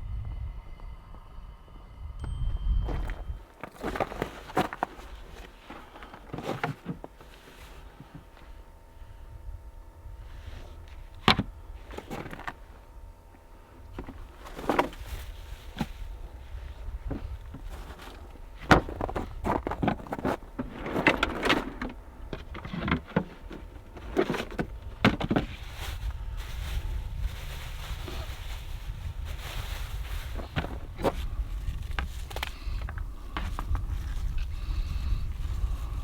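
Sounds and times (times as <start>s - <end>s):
steady low rumble: 0.0s - 36.0s
rustling bursts: 14.0s - 36.0s.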